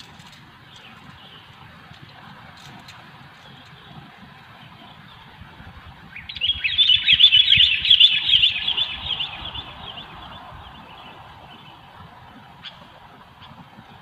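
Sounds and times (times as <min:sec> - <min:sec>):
bird chattering song: 0:00.6 - 0:01.7, 0:06.1 - 0:13.7.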